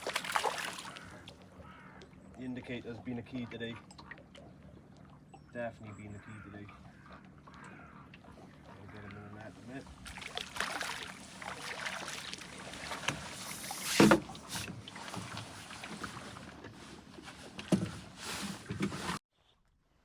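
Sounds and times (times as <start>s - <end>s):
loud fish splash: 0.0s - 1.4s, 10.0s - 15.9s
water splashing and sloshing: 0.0s - 19.2s.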